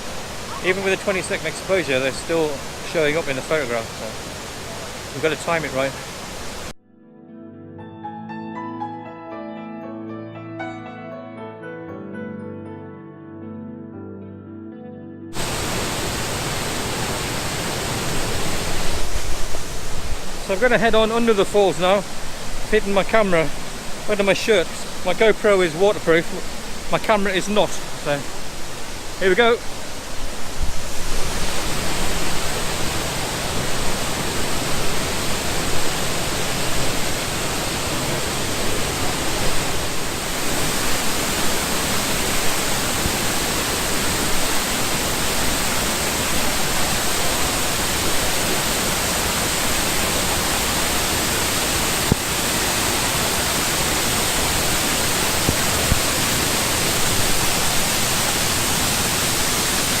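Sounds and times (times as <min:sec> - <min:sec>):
waterfall rushing: 0:00.0 - 0:06.7, 0:15.4 - 1:00.0.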